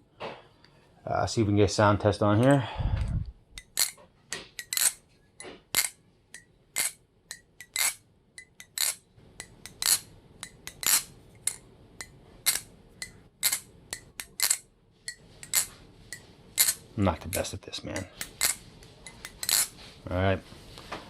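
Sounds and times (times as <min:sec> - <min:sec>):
butterfly knife metallic clacks: 0:03.6 - 0:05.0, 0:05.7 - 0:19.7.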